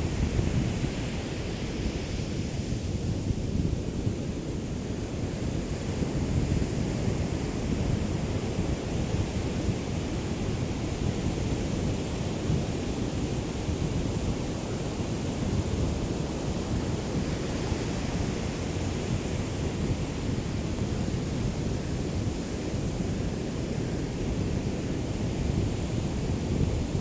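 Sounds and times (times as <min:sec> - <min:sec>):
small waves lapping on a beach: 0:00.0 - 0:27.0
wind buffeting microphone: 0:00.0 - 0:27.0.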